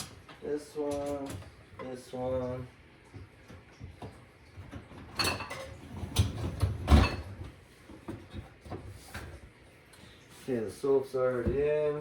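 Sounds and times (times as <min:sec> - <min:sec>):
dishwasher racks clunking: 0:04.6 - 0:07.6.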